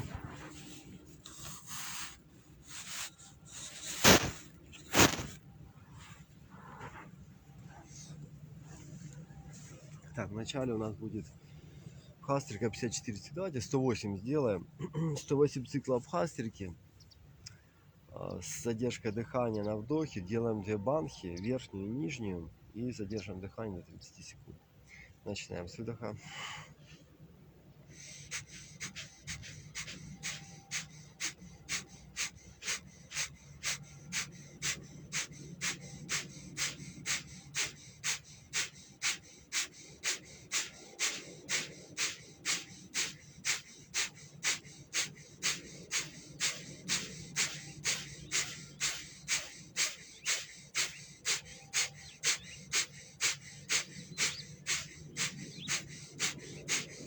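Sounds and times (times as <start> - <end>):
rapid forceful breaths: 0.0 - 13.0, 26.2 - 57.0.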